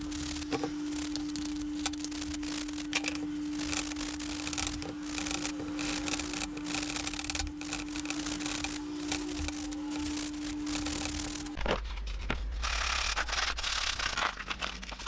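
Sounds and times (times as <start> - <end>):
hand sanding strokes: 0.0 - 11.6
steady low hum: 0.0 - 14.3.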